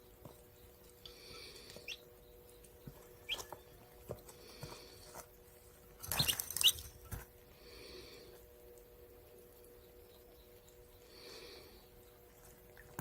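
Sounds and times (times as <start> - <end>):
small animal squeaking: 1.8 - 2.1, 3.2 - 3.7, 6.0 - 6.9.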